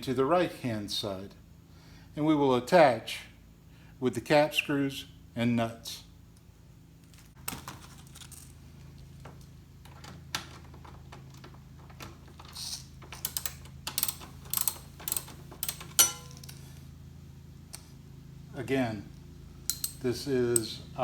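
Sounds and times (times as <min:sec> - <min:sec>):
metal screws and nuts clinking: 0:12.4 - 0:16.6, 0:19.7 - 0:20.8
socket ratchet clicking: 0:12.5 - 0:16.5, 0:19.7 - 0:20.7.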